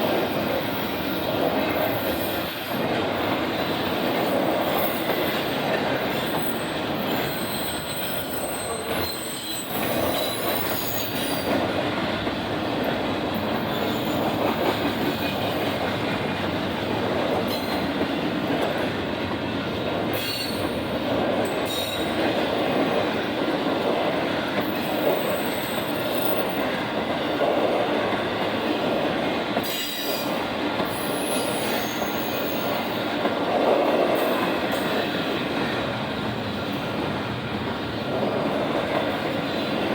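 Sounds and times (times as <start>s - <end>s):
train wheels rumbling on rail: 0.0s - 39.9s.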